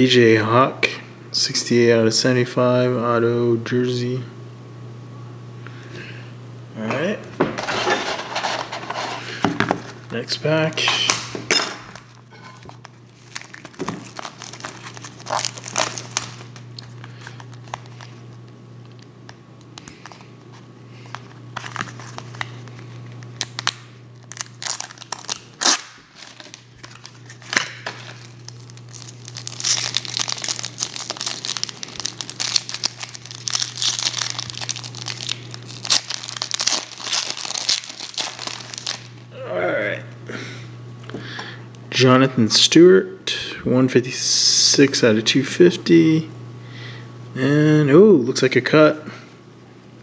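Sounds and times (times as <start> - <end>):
foil wrapper crinkling and tearing: 11.9 - 39.2
cards being handled: 12.0 - 39.1.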